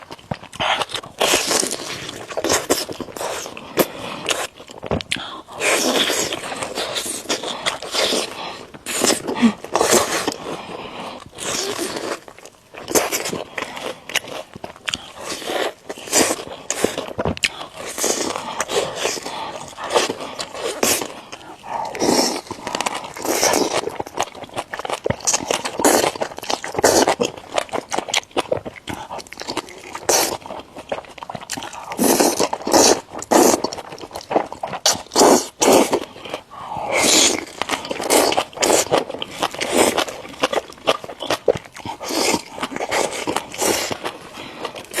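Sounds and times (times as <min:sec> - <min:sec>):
chewing and crunching: 0:00.0 - 0:45.0.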